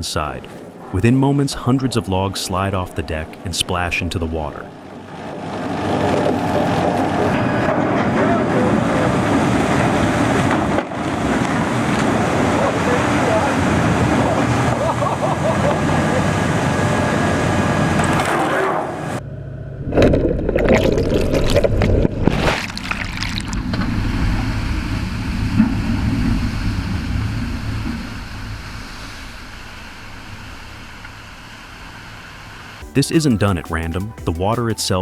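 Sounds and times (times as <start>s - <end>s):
boat engine rumble: 0.0s - 18.1s, 23.5s - 35.0s
logs splashing into water: 20.0s - 23.8s.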